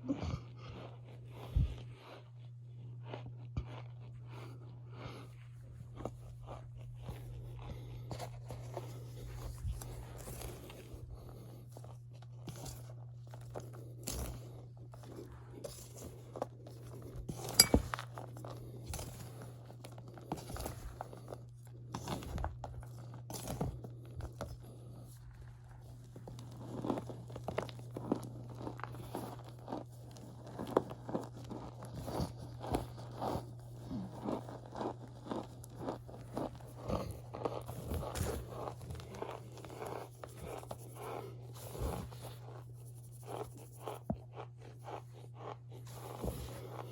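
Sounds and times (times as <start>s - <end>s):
steady low hum: 0.0s - 46.9s
cornstarch squeaky crunches: 25.2s - 46.9s.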